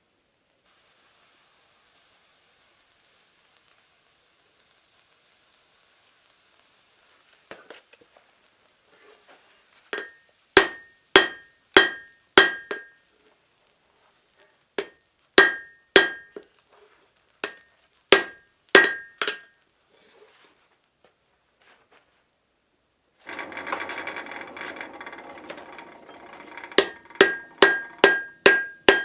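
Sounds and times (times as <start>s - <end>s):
hammer striking steel on anvil: 10.0s - 13.0s, 14.8s - 16.4s, 17.4s - 19.5s, 24.8s - 29.0s.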